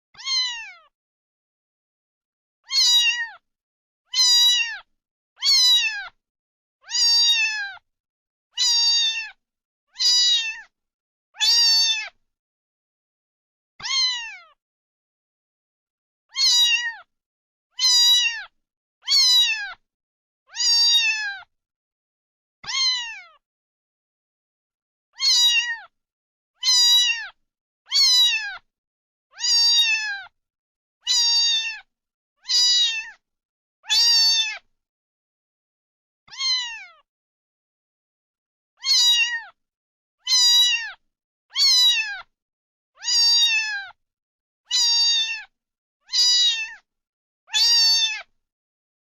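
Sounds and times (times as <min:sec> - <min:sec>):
cat meowing: 0:00.2 - 0:00.9, 0:02.6 - 0:03.4, 0:04.1 - 0:06.2, 0:06.8 - 0:07.8, 0:08.6 - 0:09.4, 0:10.0 - 0:10.7, 0:11.4 - 0:12.2, 0:13.8 - 0:14.6, 0:16.3 - 0:17.1, 0:17.7 - 0:19.8, 0:20.5 - 0:21.5, 0:22.6 - 0:23.4, 0:25.2 - 0:25.9, 0:26.6 - 0:28.6, 0:29.3 - 0:30.3, 0:31.0 - 0:33.2, 0:33.8 - 0:34.6, 0:36.3 - 0:37.0, 0:38.8 - 0:39.6, 0:40.2 - 0:42.3, 0:43.0 - 0:44.0, 0:44.7 - 0:45.5, 0:46.1 - 0:46.8, 0:47.5 - 0:48.3.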